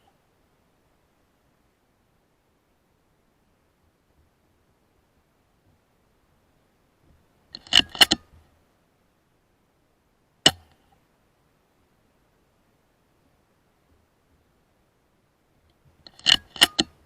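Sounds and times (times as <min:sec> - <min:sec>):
sharp metallic clicks: 0:07.6 - 0:08.3, 0:10.5 - 0:10.8, 0:16.1 - 0:17.0.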